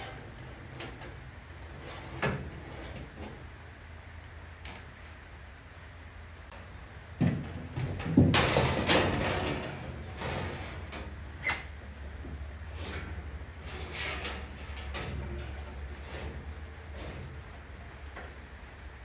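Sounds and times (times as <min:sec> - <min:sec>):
metal scraping on metal: 0:00.0 - 0:03.4, 0:07.8 - 0:11.8, 0:12.6 - 0:18.2.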